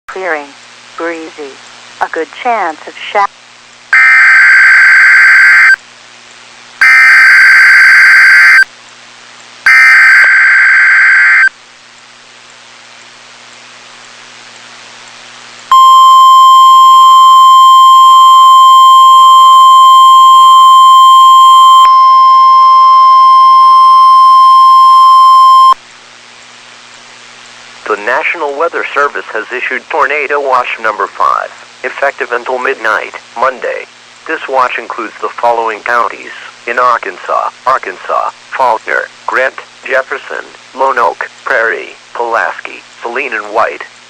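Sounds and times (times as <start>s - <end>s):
steady warning alarm tone: 4.0s - 5.8s, 6.8s - 8.7s, 9.7s - 11.5s, 15.7s - 25.8s
warbling data bursts: 4.0s - 5.8s, 9.7s - 11.5s, 15.7s - 25.8s.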